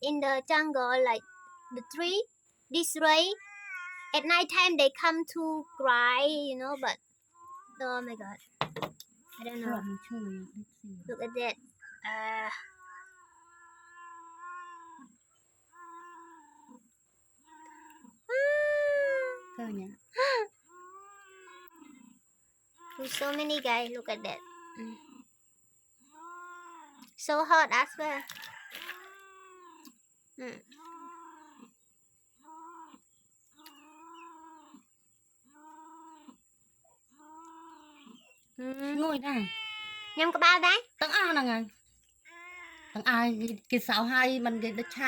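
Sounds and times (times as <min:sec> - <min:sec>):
cat meowing: 0:03.4 - 0:04.2, 0:12.4 - 0:15.1, 0:39.3 - 0:40.4, 0:42.3 - 0:43.1.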